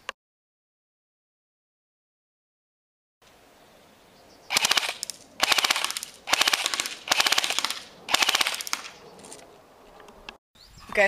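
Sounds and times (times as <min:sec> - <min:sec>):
airsoft rifle automatic bursts: 0:04.5 - 0:08.9.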